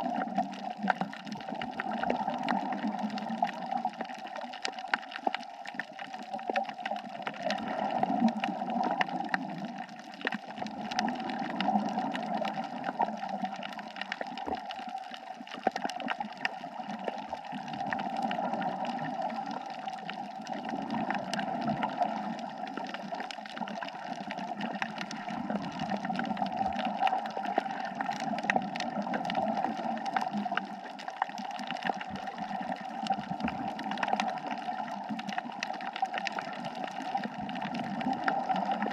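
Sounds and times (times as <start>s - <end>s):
underwater water rush: 0.0s - 38.9s.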